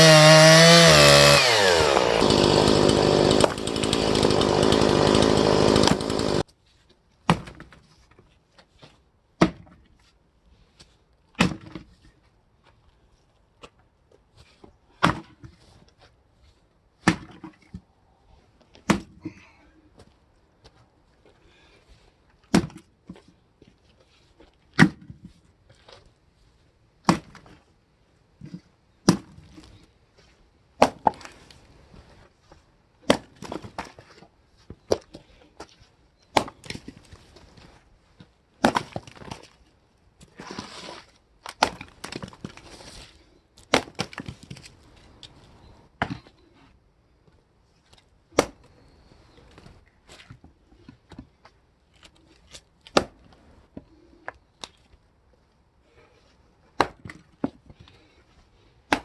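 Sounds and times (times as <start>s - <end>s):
wood splintering crackle: 0.0s - 6.4s.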